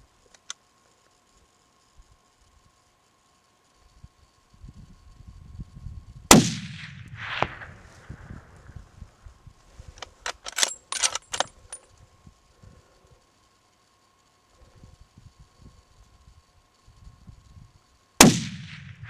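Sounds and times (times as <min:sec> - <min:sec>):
sharp metallic clicks: 0:00.3 - 0:00.7, 0:10.0 - 0:12.0
rifle shot echoing: 0:06.3 - 0:08.7, 0:18.2 - 0:19.0.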